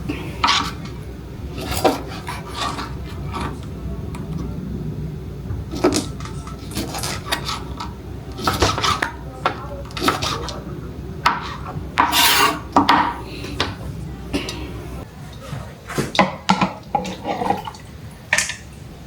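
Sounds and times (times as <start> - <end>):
kitchenware clinking: 0.0 - 4.6, 5.5 - 18.9
rasping scrapes: 1.5 - 3.6, 5.8 - 9.1, 11.3 - 13.7.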